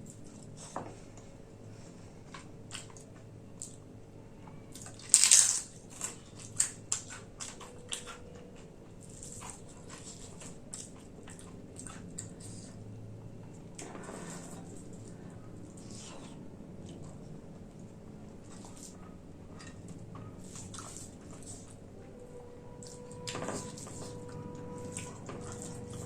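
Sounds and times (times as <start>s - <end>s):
chewing: 2.3s - 3.9s, 4.7s - 26.0s
crunchy bite: 5.0s - 6.1s.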